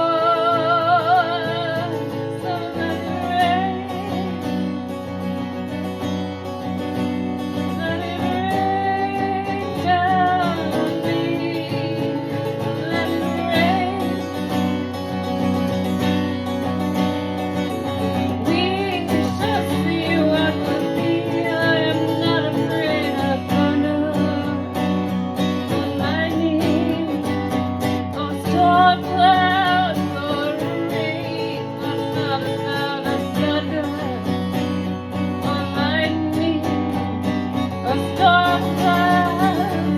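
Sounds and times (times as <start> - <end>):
person singing: 0.0 - 4.4, 7.6 - 14.5, 18.1 - 27.5, 28.1 - 34.5, 35.2 - 39.9
acoustic guitar: 0.0 - 39.9.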